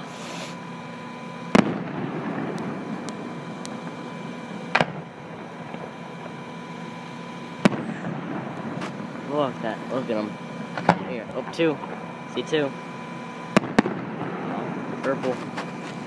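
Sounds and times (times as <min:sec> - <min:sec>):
distant fireworks booms: 0:01.5 - 0:04.0, 0:04.6 - 0:05.8, 0:07.6 - 0:09.0, 0:13.5 - 0:15.7.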